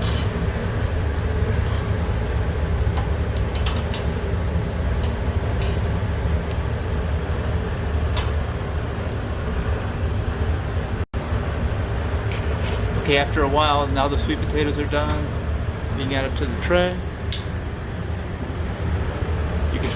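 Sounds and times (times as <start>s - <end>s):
low outdoor rumble: 0.0s - 19.9s
utensil clicks at a grill: 2.9s - 4.1s, 17.3s - 17.6s.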